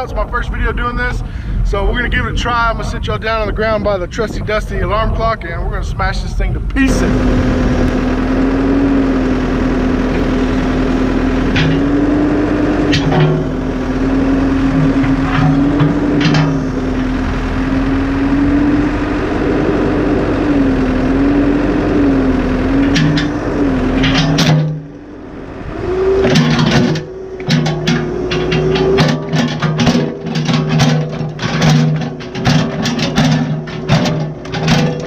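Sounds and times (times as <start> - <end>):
diesel engine running: 0.0 - 35.0
hydraulic whine: 6.6 - 35.0
bucket smashing alarm clock: 12.9 - 17.2, 26.2 - 35.0.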